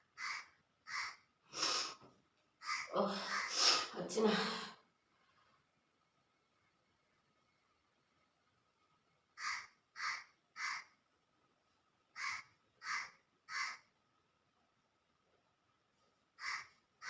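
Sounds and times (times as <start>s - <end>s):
bird giving short harsh calls: 16.4s - 16.7s.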